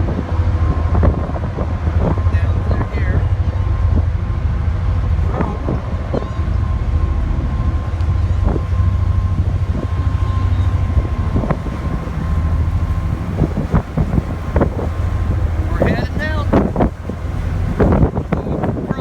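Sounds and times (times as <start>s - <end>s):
faint steady whine: 0.0s - 19.0s
wind buffeting microphone: 0.0s - 19.0s.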